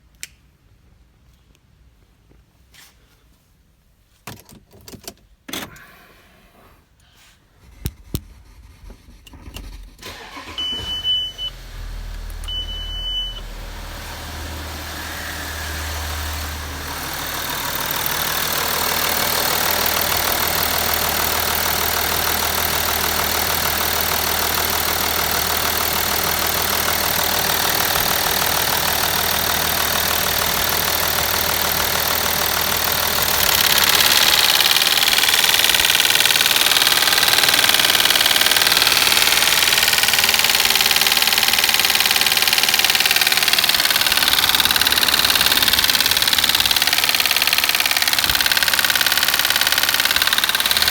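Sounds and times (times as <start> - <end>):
short beeps: 10.6 - 11.5, 12.4 - 13.5
diesel engine idling with knock: 11.4 - 50.9.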